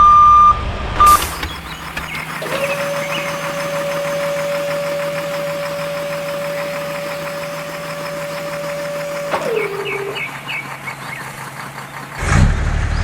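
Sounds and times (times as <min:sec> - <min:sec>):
small electric motor whining: 0:01.2 - 0:10.9.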